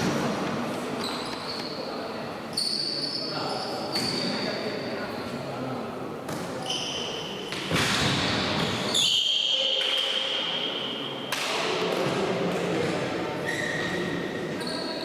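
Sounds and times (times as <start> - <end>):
sneakers squeaking on floor: 1.0 - 4.7, 6.3 - 11.1, 12.8 - 15.0
high squeal: 8.9 - 9.8.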